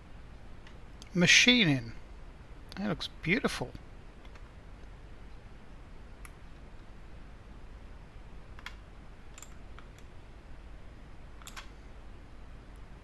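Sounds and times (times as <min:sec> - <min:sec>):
faint low hum: 0:00.0 - 0:13.0
computer mouse clicks: 0:08.6 - 0:10.1, 0:11.4 - 0:11.7.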